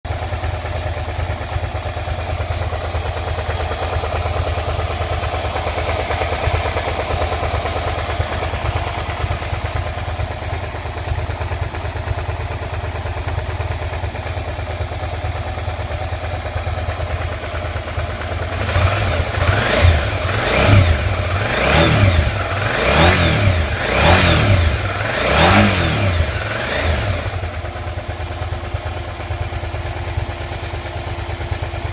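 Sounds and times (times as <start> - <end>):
engine knocking: 0.0 - 31.9
motorcycle engine idling: 0.0 - 31.9
throttle blips revving engine: 18.6 - 27.4.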